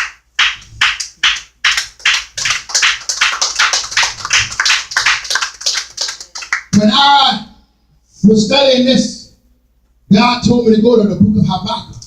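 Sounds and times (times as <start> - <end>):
hand clapping: 0.0 - 6.8.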